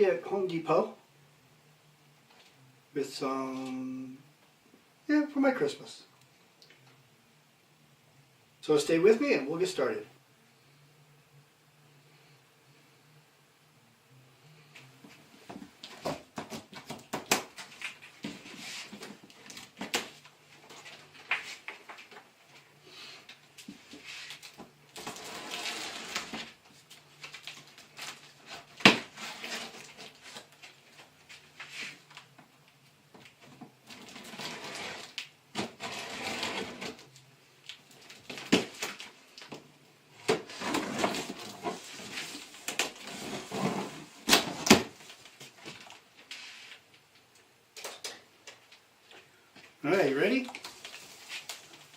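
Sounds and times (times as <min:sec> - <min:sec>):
cardboard rustling and scraping: 0:14.7 - 0:22.3, 0:23.6 - 0:32.2, 0:33.5 - 0:37.1, 0:40.2 - 0:46.9, 0:50.3 - 0:51.9.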